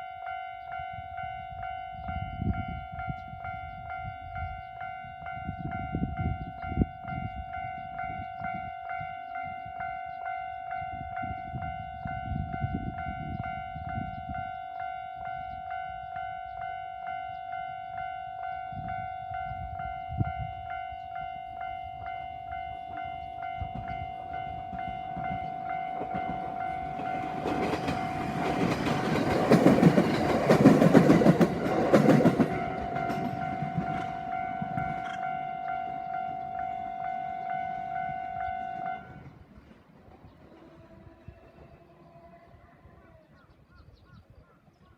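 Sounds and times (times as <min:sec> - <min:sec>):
level crossing warning bell: 0:00.0 - 0:39.6
train wheels rumbling on rails: 0:21.7 - 0:42.0.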